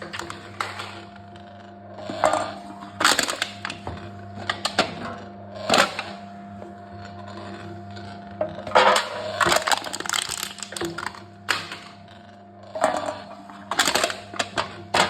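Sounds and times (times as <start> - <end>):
can-crushing machine humming: 0.0 - 15.0
cans being crushed: 9.4 - 11.7.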